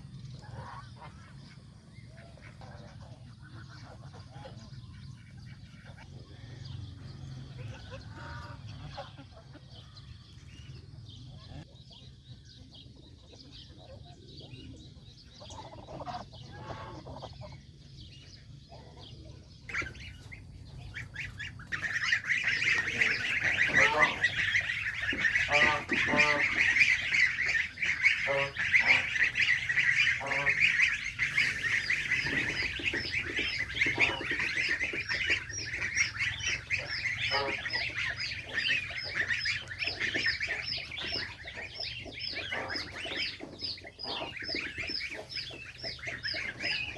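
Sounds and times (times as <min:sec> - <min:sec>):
goslings peeping: 0:00.0 - 0:46.9
geese honking: 0:15.6 - 0:17.4, 0:19.7 - 0:46.9.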